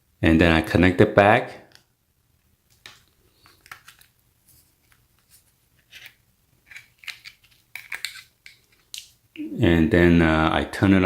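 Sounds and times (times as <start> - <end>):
small parts clicking and scraping: 2.7 - 9.2.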